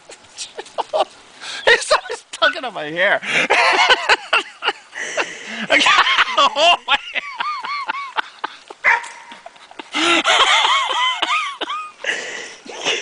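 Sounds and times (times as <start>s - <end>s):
scuffling noise: 0.0s - 1.3s.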